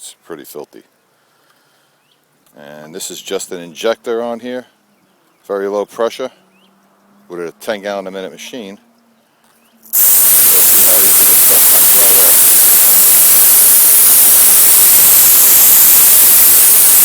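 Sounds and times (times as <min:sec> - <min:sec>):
pressure washer spraying hiss: 0:09.9 - 0:17.0.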